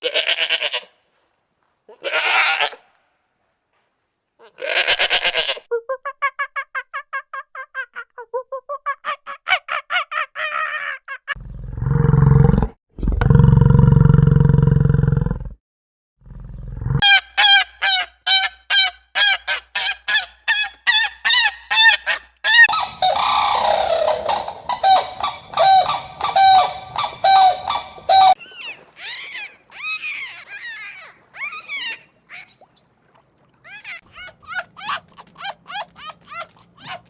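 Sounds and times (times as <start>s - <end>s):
honking bird calls: 22.5s - 28.4s.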